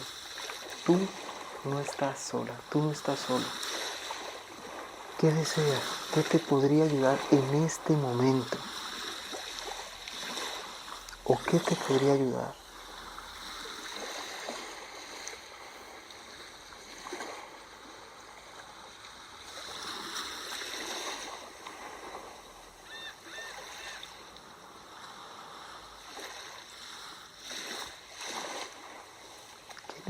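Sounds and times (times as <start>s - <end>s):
sea waves washing: 0.0s - 30.0s
short high bird calls: 22.8s - 24.2s.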